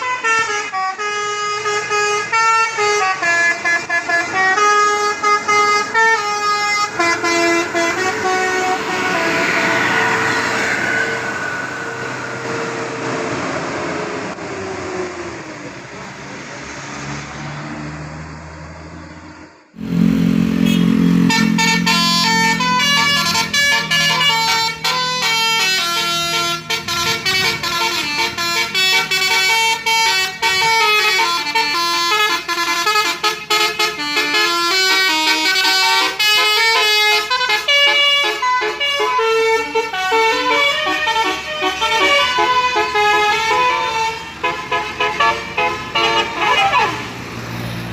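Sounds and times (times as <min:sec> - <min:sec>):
multi-tone bus horn tune: 0:00.0 - 0:13.5, 0:19.7 - 0:47.2
vehicle hum: 0:00.0 - 0:47.9.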